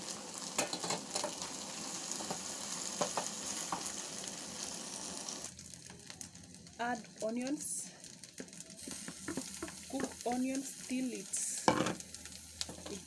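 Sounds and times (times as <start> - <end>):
fish frying in hot oil: 0.0 - 13.0.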